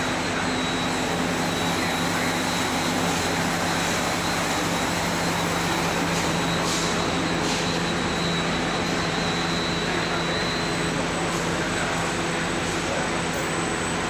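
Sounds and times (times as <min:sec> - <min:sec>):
cutting saw running: 0:00.0 - 0:10.6.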